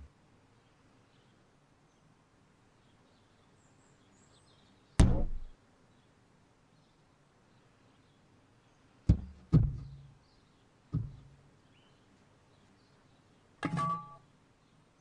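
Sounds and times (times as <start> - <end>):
sharp knocks: 5.0 - 5.5, 9.1 - 10.0, 10.9 - 11.4.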